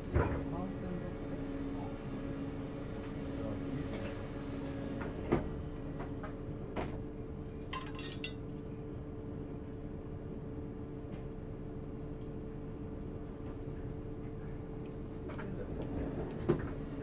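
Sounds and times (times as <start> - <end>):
clinks and knocks: 7.7 - 8.4.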